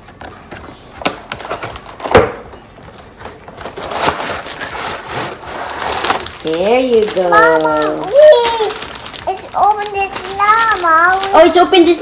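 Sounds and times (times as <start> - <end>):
packaging clicks and crackling: 3.5 - 12.0.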